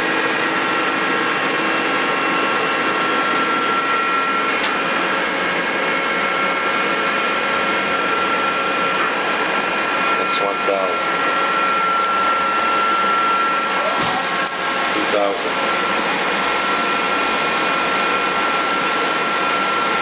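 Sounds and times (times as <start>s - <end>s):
lathe machine hum and whine: 0.0s - 20.0s.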